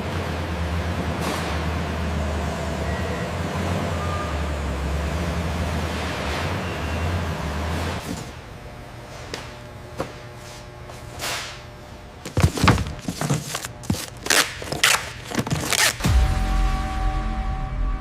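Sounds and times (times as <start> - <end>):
knocks and thuds: 12.3 - 14.0.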